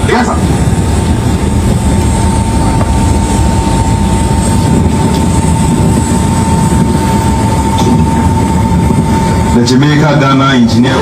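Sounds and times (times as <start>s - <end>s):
high-pitched whine: 0.0s - 11.0s
machine rumble: 0.0s - 11.0s.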